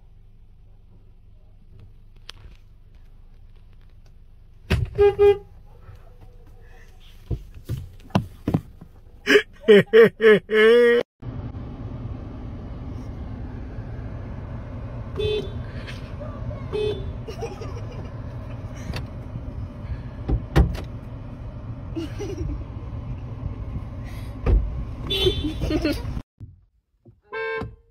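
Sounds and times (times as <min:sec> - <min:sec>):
loud horn honking: 0:04.9 - 0:05.5, 0:15.1 - 0:15.8, 0:16.6 - 0:17.2, 0:25.0 - 0:25.7, 0:27.2 - 0:27.8.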